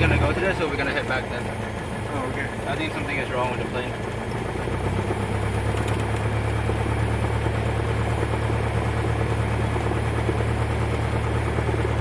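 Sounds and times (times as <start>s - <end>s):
aircraft piston engine droning: 0.0s - 12.0s.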